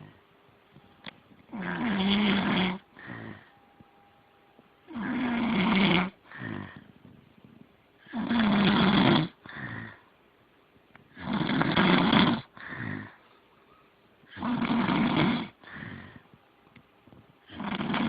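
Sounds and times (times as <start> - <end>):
loud snoring: 1.5 - 3.5, 4.9 - 6.9, 8.0 - 10.0, 11.1 - 13.2, 14.3 - 16.2, 17.5 - 18.0.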